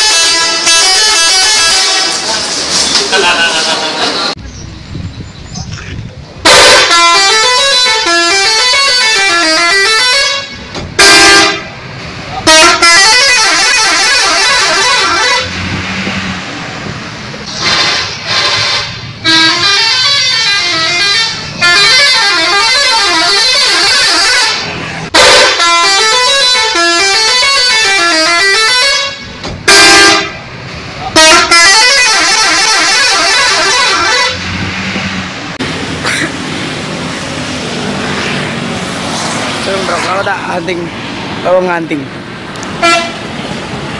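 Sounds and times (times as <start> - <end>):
bus musical horn tune: 0.0 - 2.3, 6.4 - 11.7, 12.4 - 15.7, 17.6 - 30.4, 31.1 - 34.5, 42.8 - 43.2
steady horn blasts: 0.0 - 2.4, 6.4 - 11.8, 12.4 - 16.4, 17.5 - 30.4, 31.1 - 35.4, 42.8 - 43.3
traffic noise: 0.0 - 43.9.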